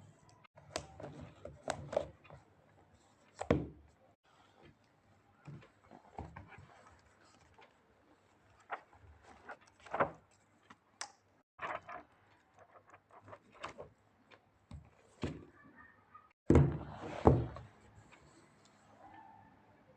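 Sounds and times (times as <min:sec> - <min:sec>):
book thump: 0:03.4 - 0:03.8, 0:14.7 - 0:15.4, 0:16.5 - 0:17.7.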